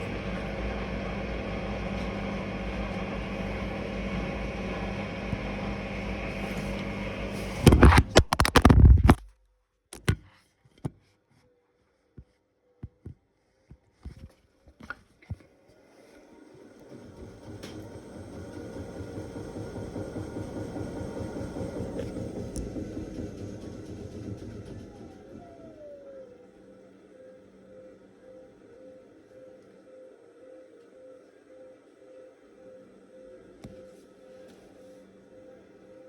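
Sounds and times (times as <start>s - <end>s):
washing machine spinning: 0.0s - 8.0s, 16.1s - 28.7s.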